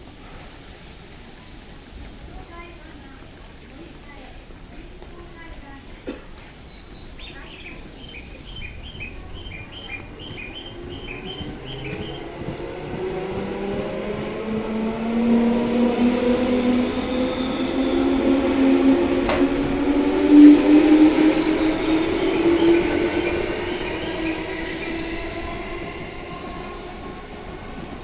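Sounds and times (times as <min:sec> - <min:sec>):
train motor and gear hum: 0:00.4 - 0:28.0
sharp click: 0:19.2 - 0:19.6.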